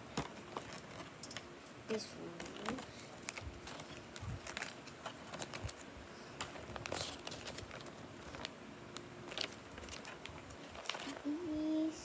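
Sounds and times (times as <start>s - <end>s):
packaging clicks and rustles: 0.1s - 1.5s, 2.3s - 11.5s.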